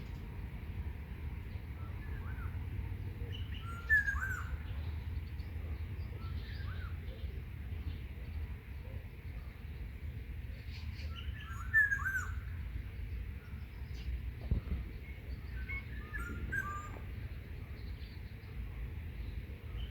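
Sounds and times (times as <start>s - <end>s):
birds chirping: 10.8s - 19.9s.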